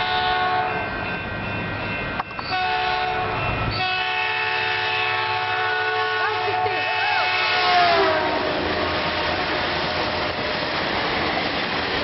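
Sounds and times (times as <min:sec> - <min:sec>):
train horn blasts: 0:00.0 - 0:00.8, 0:02.5 - 0:10.4
train rumble: 0:00.0 - 0:12.0.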